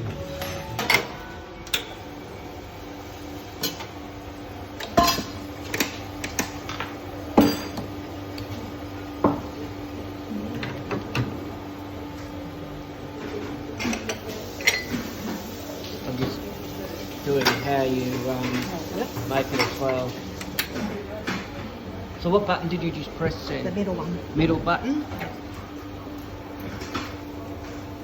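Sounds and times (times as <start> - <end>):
cups and dishes clinking: 4.8 - 5.4, 6.6 - 8.0, 13.8 - 15.1, 17.3 - 21.6.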